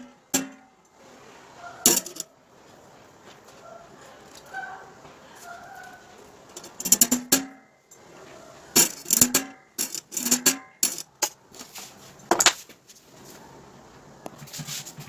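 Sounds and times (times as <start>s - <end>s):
metal parts knocking and clinking: 1.9s - 2.3s, 6.5s - 8.0s, 8.8s - 11.4s.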